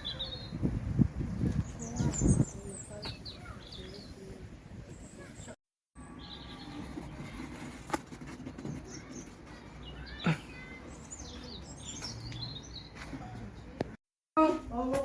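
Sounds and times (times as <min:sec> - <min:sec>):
small birds chirping: 0:00.0 - 0:14.0
outdoor background noise: 0:00.0 - 0:15.0.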